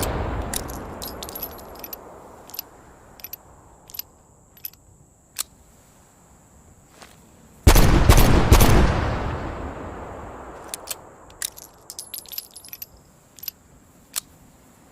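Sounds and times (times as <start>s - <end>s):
metallic clicks and clinks: 0.0s - 4.8s, 10.6s - 14.3s
revolver gunshots: 7.7s - 10.6s.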